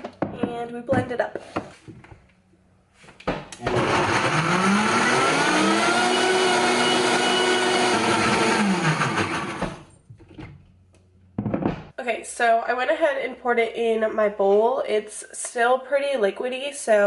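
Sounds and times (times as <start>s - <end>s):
blender motor whine: 3.6s - 9.9s.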